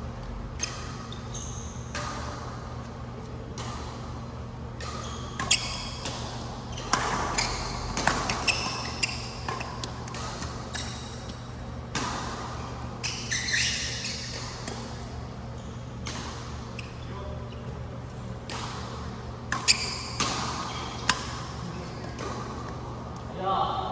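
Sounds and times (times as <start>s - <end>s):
shoes squeaking on court: 0.6s - 1.9s, 4.8s - 23.3s
racket hitting shuttlecock: 4.8s - 15.2s, 18.4s - 22.8s.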